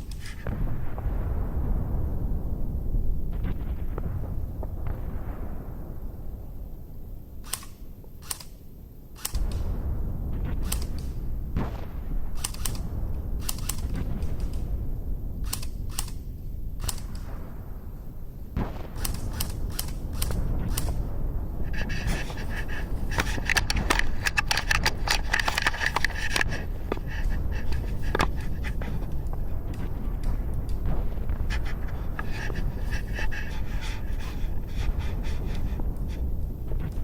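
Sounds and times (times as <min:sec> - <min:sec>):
low rumble: 0:09.4 - 0:37.0
airsoft gun shots: 0:18.6 - 0:36.2.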